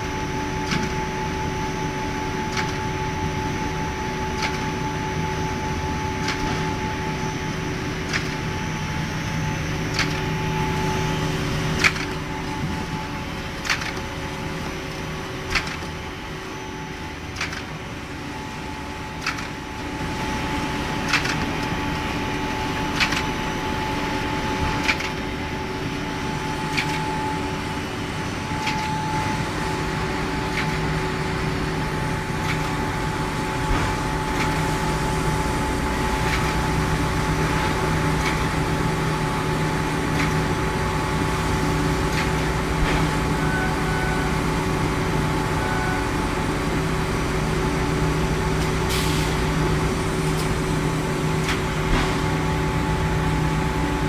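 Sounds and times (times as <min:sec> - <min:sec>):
sharp machine click: 0:26.7 - 0:27.0.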